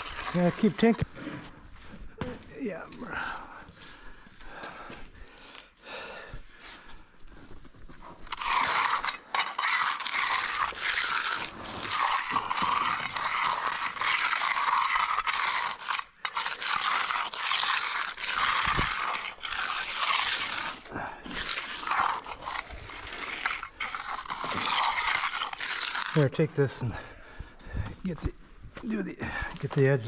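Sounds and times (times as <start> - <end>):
metal tool scraping concrete: 0.0 - 1.5, 7.8 - 27.1.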